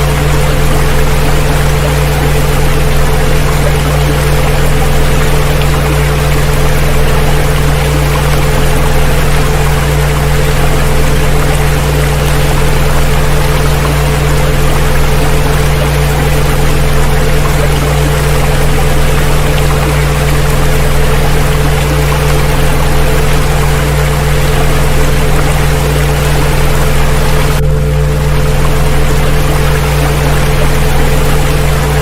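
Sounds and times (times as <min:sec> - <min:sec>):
deep electronic tones: 0:00.0 - 0:32.0
running water: 0:00.0 - 0:32.0.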